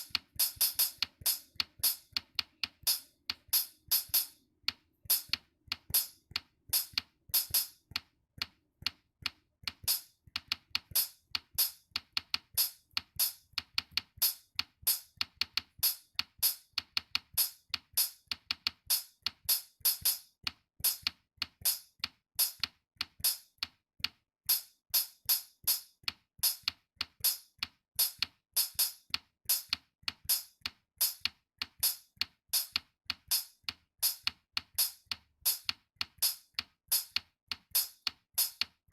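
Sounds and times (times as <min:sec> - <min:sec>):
drum machine beat: 0:00.0 - 0:04.3.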